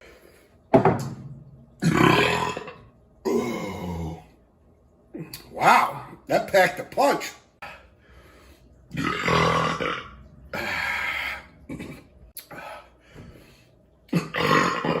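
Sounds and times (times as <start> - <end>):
man burping: 1.8 - 4.3, 8.9 - 12.1, 14.1 - 15.0.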